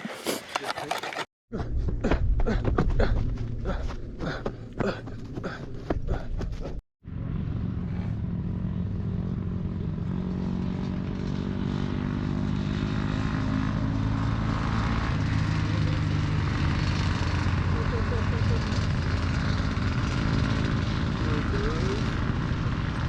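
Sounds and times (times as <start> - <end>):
motor running: 15.5 - 23.0.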